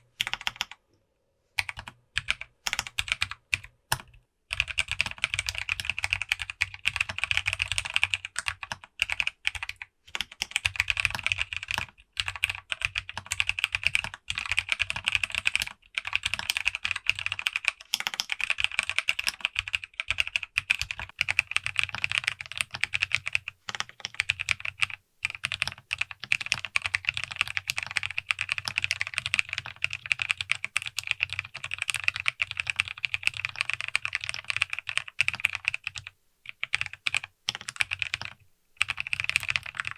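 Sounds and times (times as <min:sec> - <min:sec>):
fast mechanical keyboard typing: 0:00.2 - 0:00.8, 0:01.6 - 0:39.9.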